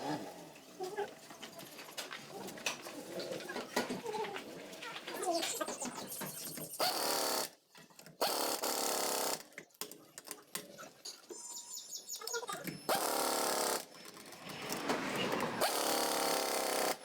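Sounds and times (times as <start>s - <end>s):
pneumatic impact wrench bursts: 6.8s - 7.6s, 8.2s - 9.5s, 12.9s - 13.9s, 15.6s - 17.0s.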